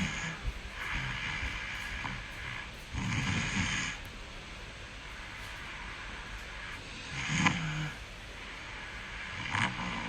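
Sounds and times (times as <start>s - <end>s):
person snoring: 0.0s - 4.0s, 7.0s - 8.0s
steady hiss: 0.0s - 10.0s.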